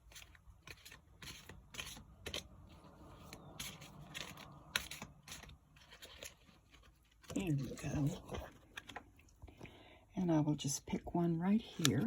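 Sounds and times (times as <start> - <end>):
cards being shuffled: 0.0 - 9.1.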